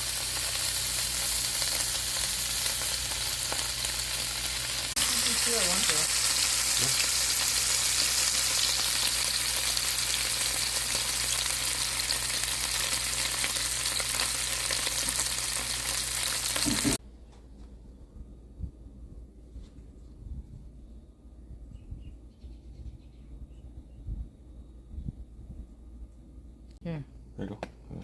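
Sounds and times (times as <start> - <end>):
meat sizzling in hot pan: 0.0 - 17.0.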